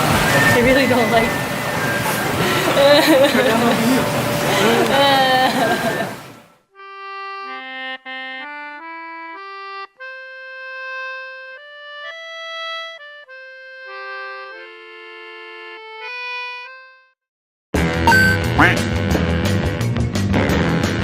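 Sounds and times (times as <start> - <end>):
loud live background noise: 0.0 - 6.4
reedy accordion-like melody: 6.8 - 17.2.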